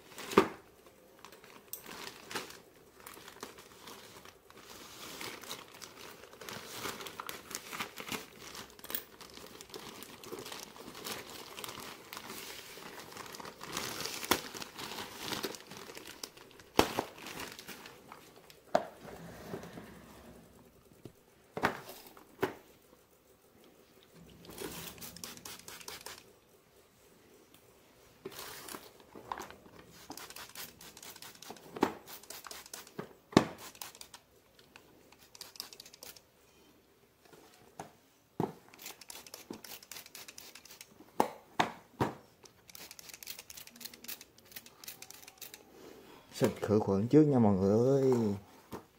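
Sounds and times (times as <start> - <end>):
plastic packaging rustling: 0.0 - 18.6, 28.2 - 33.0
packaging tearing: 5.2 - 18.0.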